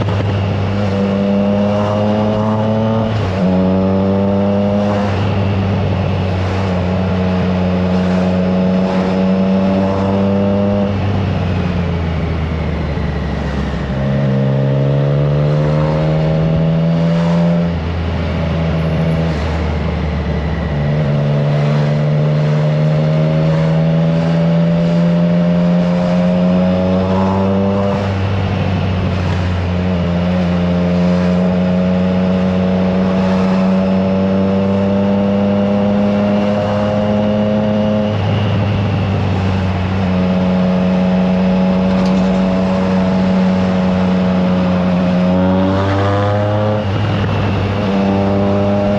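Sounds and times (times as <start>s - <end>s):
motorcycle engine accelerating: 0.0s - 48.9s.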